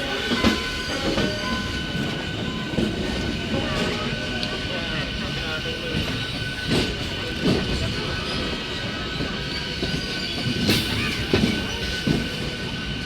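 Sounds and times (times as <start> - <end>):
train clanks: 0.0 - 13.0
train rumbling on tracks: 0.0 - 13.0
high wheel squeal: 5.3 - 13.0.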